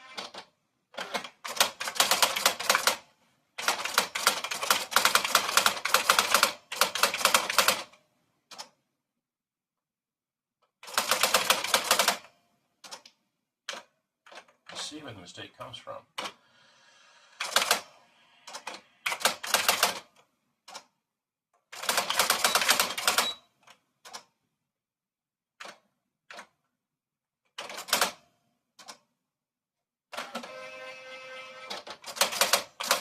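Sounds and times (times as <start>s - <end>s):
typewriter typing: 0.0s - 3.0s, 3.6s - 8.7s, 10.8s - 12.3s, 17.4s - 17.9s, 18.5s - 20.1s, 21.8s - 23.4s, 27.6s - 28.2s, 31.7s - 33.0s.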